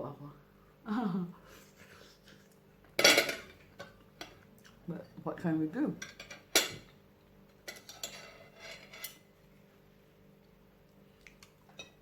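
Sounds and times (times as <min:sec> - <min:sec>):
cutlery clinking against dishes: 0:03.0 - 0:04.4, 0:06.0 - 0:06.9, 0:07.7 - 0:09.2, 0:11.8 - 0:12.0
cutlery scraping dishes: 0:03.0 - 0:04.4, 0:06.0 - 0:06.9, 0:07.6 - 0:09.2, 0:11.8 - 0:12.0.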